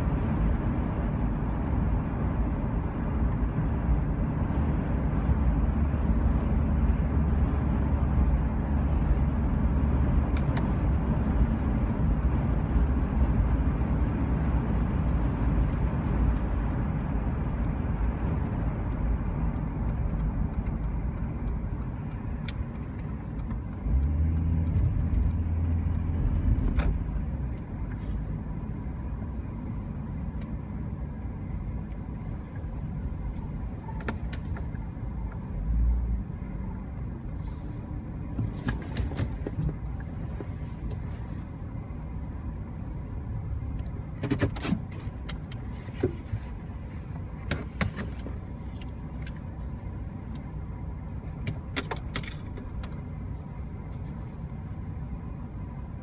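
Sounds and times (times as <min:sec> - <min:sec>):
vehicle engine and road rumble: 0:00.0 - 0:56.0
faint regular ticking: 0:10.4 - 0:28.0.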